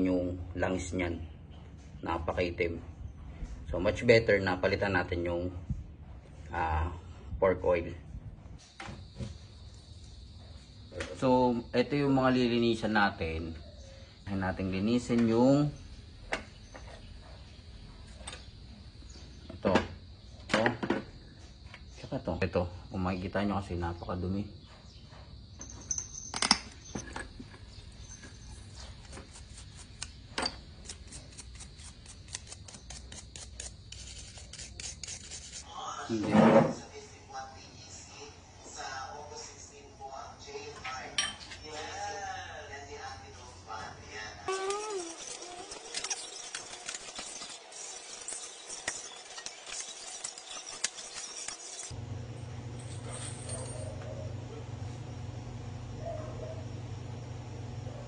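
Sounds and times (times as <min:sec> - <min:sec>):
hand scrubbing strokes: 0:30.8 - 0:35.7
light clicks and scrapes of tools: 0:44.6 - 0:52.0.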